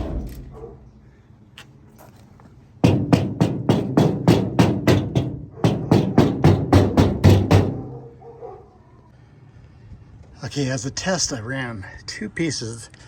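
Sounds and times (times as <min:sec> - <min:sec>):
sharp percussive knocks: 0:02.8 - 0:07.8.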